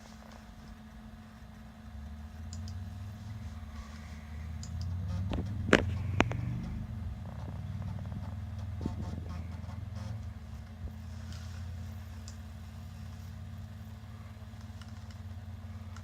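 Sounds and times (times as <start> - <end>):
floppy drive whirring: 0.0 - 16.0
sharp clicks: 2.5 - 2.8, 4.5 - 6.7.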